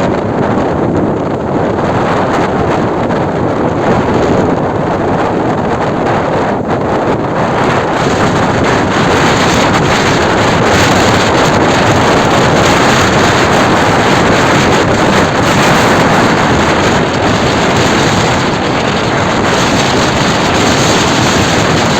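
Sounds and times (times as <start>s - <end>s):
rough sea surf: 0.0s - 21.9s
wind buffeting microphone: 0.0s - 21.9s.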